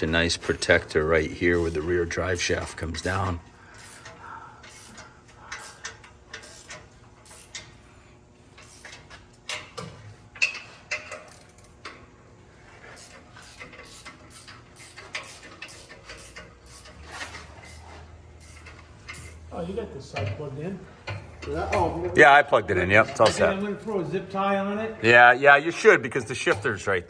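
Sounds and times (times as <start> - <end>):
hand tools tapping on metal: 0.0 - 7.7, 8.6 - 12.0, 13.0 - 17.8, 18.4 - 22.2, 22.8 - 24.1, 26.4 - 26.8.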